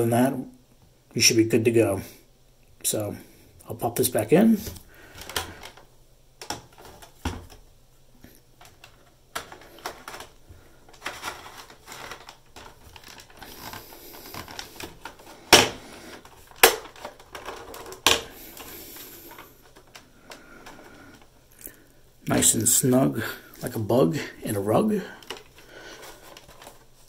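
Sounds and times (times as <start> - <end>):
plastic scraping: 4.6 - 7.6, 8.2 - 21.4, 24.6 - 27.0.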